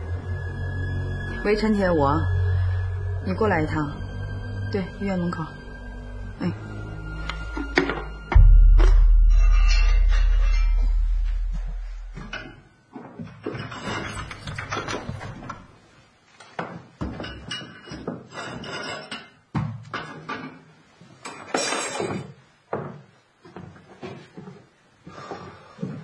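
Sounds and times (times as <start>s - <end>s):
knocks and thuds: 7.7s - 12.5s.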